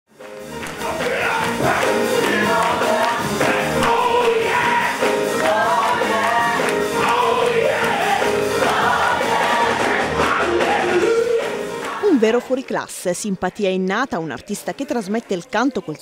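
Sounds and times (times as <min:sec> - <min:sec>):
band accompaniment: 0:00.2 - 0:12.7
group of voices singing gospel: 0:00.7 - 0:12.4.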